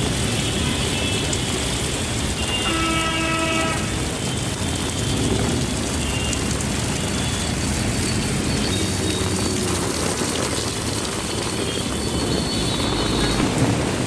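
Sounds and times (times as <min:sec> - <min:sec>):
heavy rain: 0:00.0 - 0:14.0
horn sounding: 0:02.4 - 0:04.2.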